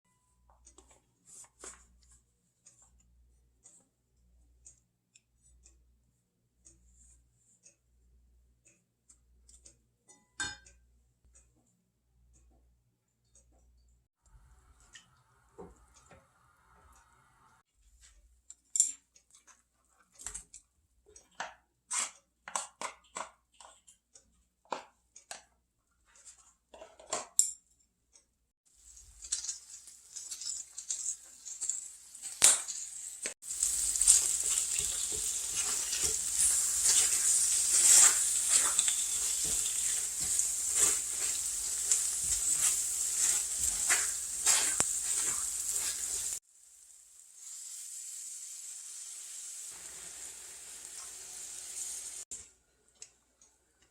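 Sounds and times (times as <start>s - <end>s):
food sizzling in oil: 28.8s - 52.3s
utensils clinking on dishes: 28.9s - 46.4s
stirring knocks: 33.4s - 46.4s.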